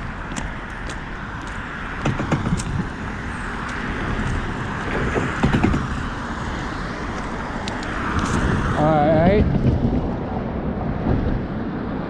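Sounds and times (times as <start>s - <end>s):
footsteps on gravel: 0.0s - 5.4s
traffic noise: 0.0s - 12.0s
wind: 0.0s - 12.0s.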